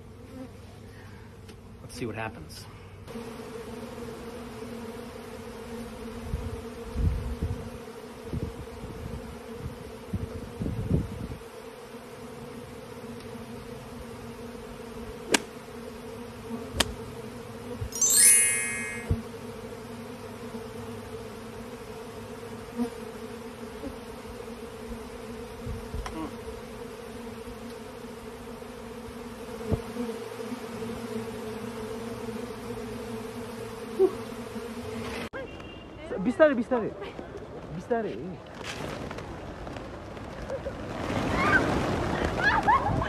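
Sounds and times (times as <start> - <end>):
bees buzzing: 3.0 - 35.3
shrill high-pitched sound: 18.0 - 19.1.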